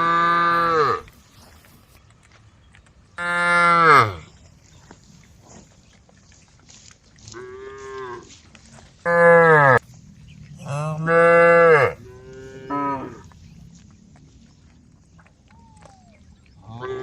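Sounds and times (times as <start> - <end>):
cows mooing: 0.0 - 1.2, 3.2 - 4.3, 7.3 - 8.4, 9.0 - 13.5, 16.6 - 17.0.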